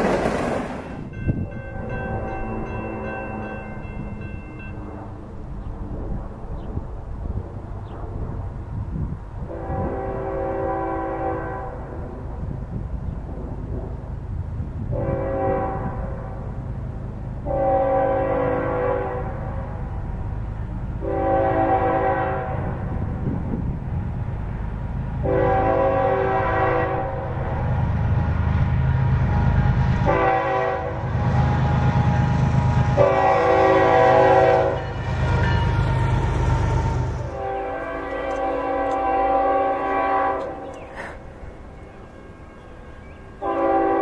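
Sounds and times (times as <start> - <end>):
low rumble of train: 0.0 - 44.0
locomotive air horn chord blasts: 1.4 - 3.8, 9.5 - 12.2, 14.9 - 16.4, 17.4 - 19.8, 21.0 - 22.9, 25.2 - 27.5, 29.6 - 40.8, 42.0 - 44.0.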